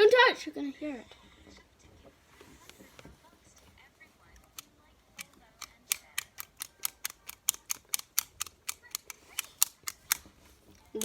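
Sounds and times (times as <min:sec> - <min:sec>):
plastic fidget toy clicking: 0:04.4 - 0:11.0.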